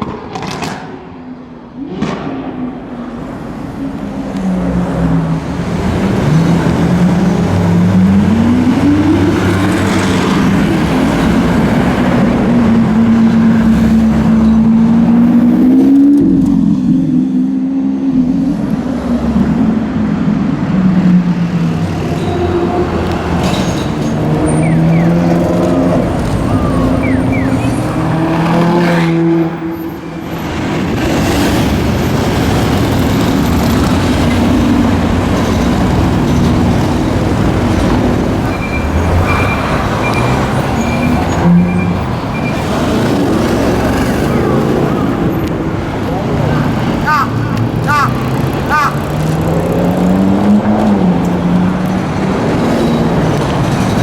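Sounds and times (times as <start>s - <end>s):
car engines revving: 0.0s - 54.0s.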